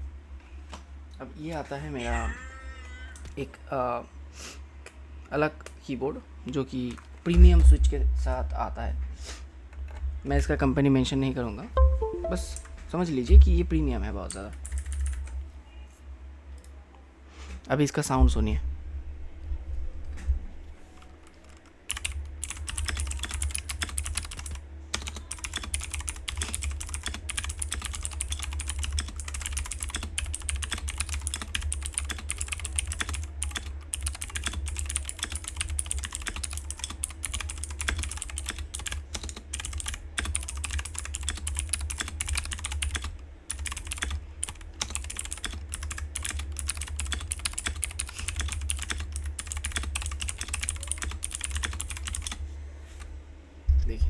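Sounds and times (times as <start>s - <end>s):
mechanical keyboard typing: 11.8s - 12.7s, 14.2s - 15.4s, 21.0s - 52.4s.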